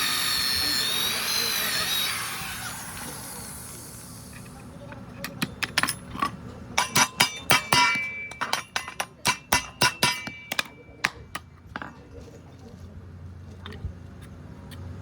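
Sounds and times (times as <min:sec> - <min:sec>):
hammer blows with metallic ring: 0:05.2 - 0:12.0.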